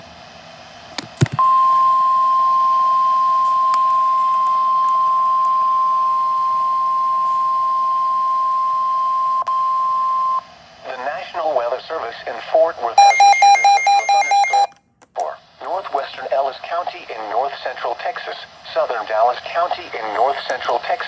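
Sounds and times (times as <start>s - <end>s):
emergency alert beep: 1.4s - 10.4s, 13.0s - 14.7s.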